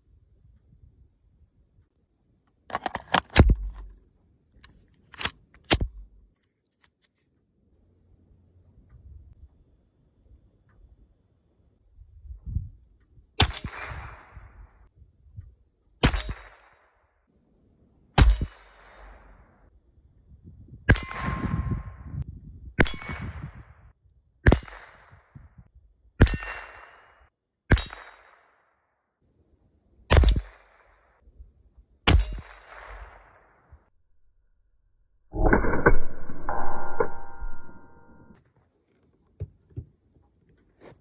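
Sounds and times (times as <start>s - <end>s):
sharp metallic clanks: 32.1s - 32.9s.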